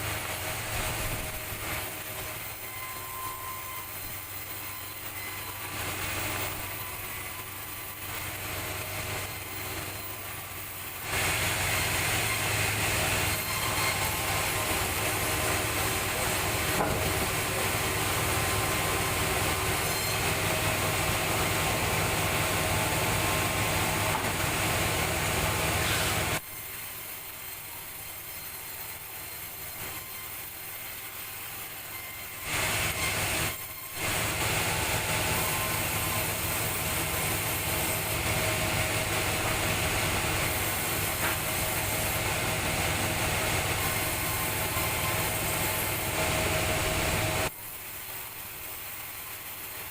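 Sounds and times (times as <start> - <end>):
sawmill machinery running: 0.0 - 49.9.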